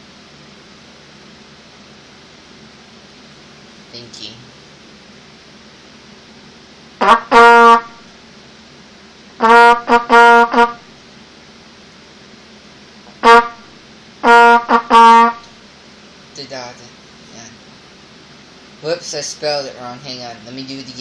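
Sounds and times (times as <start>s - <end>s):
trumpet blasts: 7.0s - 8.1s, 9.4s - 10.9s, 13.2s - 15.5s.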